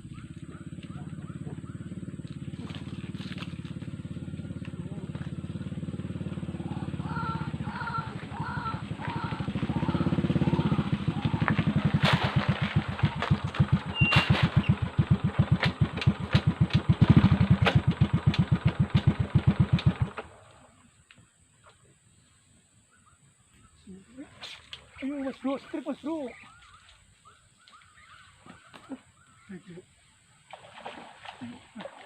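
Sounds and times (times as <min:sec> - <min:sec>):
small engine running: 0:00.0 - 0:20.5.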